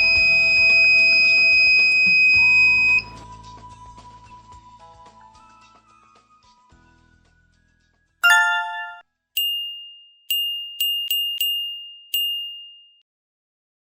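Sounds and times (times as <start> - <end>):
electronic chime chord: 8.2 - 9.0
high electronic dings: 8.2 - 13.0.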